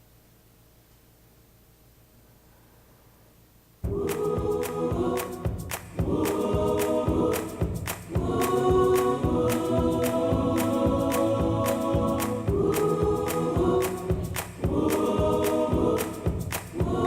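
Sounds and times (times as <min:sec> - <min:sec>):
choir singing chords: 0:03.8 - 0:17.0
steady percussive beat: 0:03.8 - 0:17.0.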